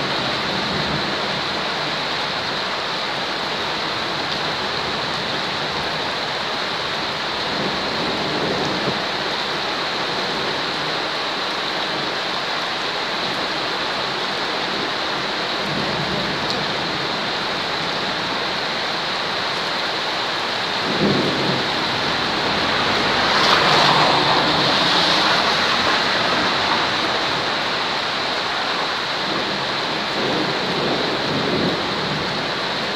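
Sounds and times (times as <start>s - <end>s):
steady rain: 0.0s - 32.9s
thunder rumbling: 6.9s - 10.6s, 20.3s - 32.9s.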